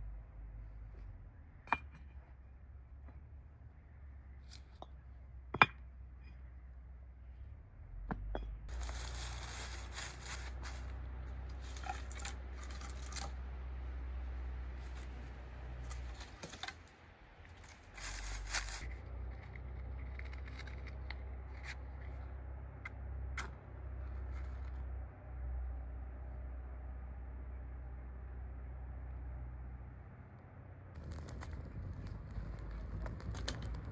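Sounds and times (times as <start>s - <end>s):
steady low rumble: 0.0s - 33.9s
rustling or tearing: 8.7s - 13.5s, 14.7s - 21.8s.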